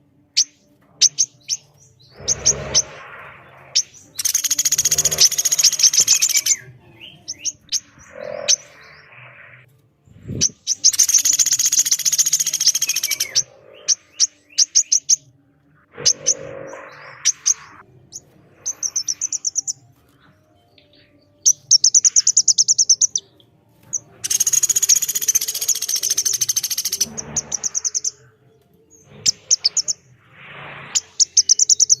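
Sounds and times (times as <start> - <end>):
buzzy rattling bird trills: 0.4 - 15.2, 15.9 - 20.3, 23.9 - 28.3, 28.9 - 30.2
fast high repeated bird notes: 1.0 - 19.8, 23.9 - 28.4, 29.1 - 32.0.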